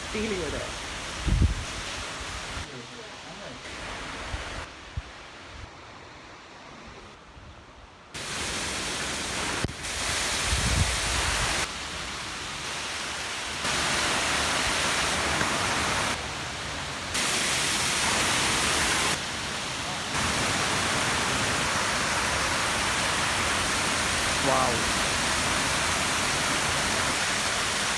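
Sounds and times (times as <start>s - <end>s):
waterfall rushing: 8.2s - 27.9s.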